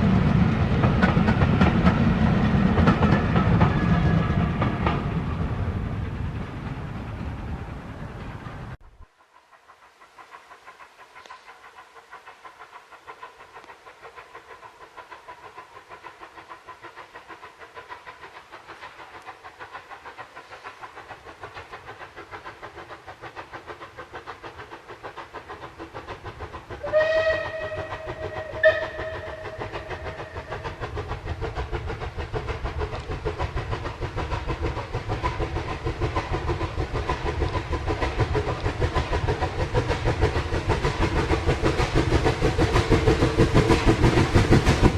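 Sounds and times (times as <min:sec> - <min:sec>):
steam train rumble: 0:00.0 - 0:44.9
steam whistle blasts: 0:26.8 - 0:29.7.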